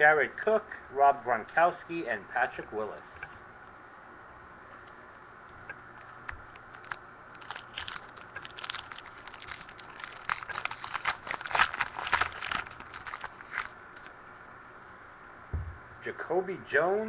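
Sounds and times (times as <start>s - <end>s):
card pack wrapper crinkling: 6.0s - 14.1s.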